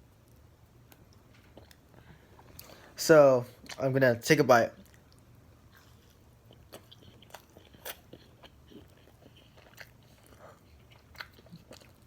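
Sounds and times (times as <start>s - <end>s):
wet chewing: 4.8s - 12.0s.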